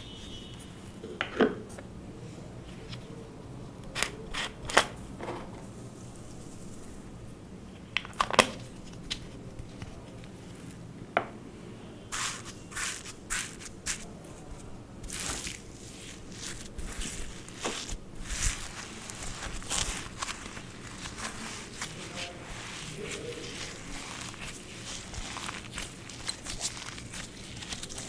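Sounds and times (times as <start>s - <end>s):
slime squishing and crackling: 12.2s - 28.0s.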